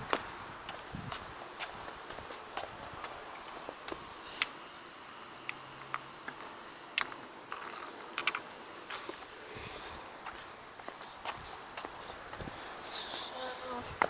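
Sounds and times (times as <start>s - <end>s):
light metallic clinks: 4.3s - 8.7s.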